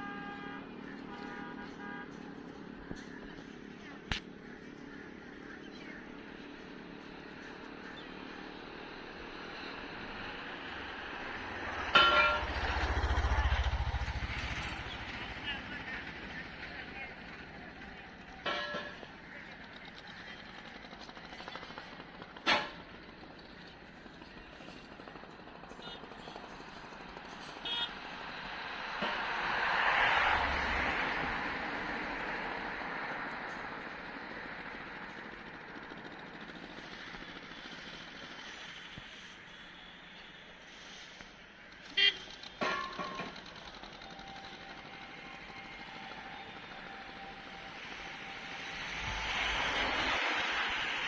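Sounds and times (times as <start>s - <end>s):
vehicle engine approaching: 0.0s - 22.4s, 23.0s - 51.0s
vehicle passing by: 9.6s - 17.0s, 27.7s - 33.7s, 45.2s - 51.0s
horn toots: 41.9s - 42.4s.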